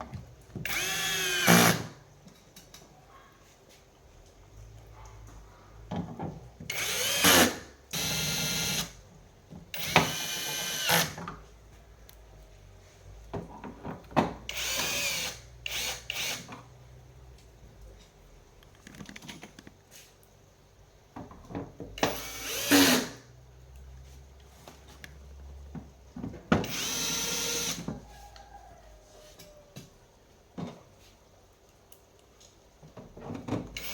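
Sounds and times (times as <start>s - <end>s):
cordless drill whining: 0.6s - 1.9s, 6.7s - 8.9s, 9.8s - 11.2s, 14.5s - 16.5s, 22.0s - 23.2s, 26.6s - 27.9s.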